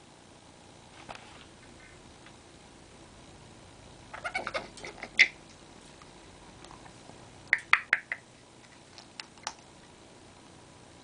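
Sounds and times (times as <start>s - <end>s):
parrot clicking: 7.5s - 8.3s, 9.0s - 9.7s.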